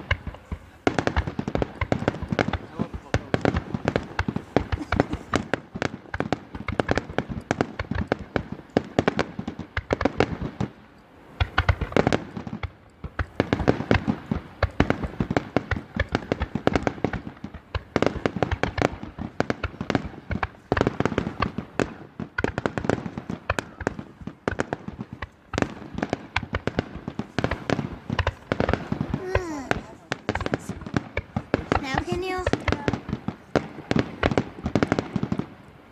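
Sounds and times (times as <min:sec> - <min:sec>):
fireworks crackling bangs and pops: 0:00.0 - 0:35.9.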